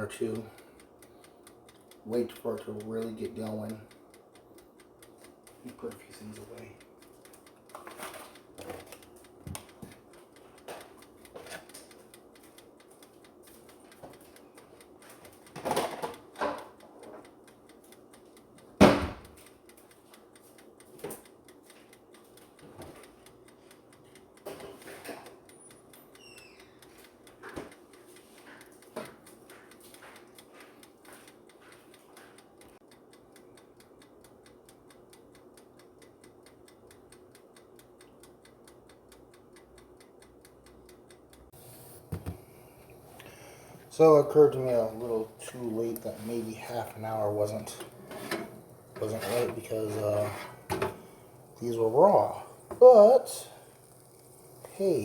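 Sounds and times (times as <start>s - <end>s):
faint steady hum: 29.5s - 55.0s
kitchen things knocking and clattering: 47.7s - 51.1s.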